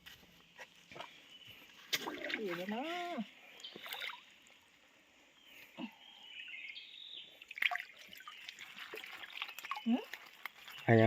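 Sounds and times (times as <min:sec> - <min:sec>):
water dripping and trickling: 0:00.8 - 0:04.8, 0:07.3 - 0:11.0
light knocks and splashes: 0:01.8 - 0:04.3, 0:07.5 - 0:11.0.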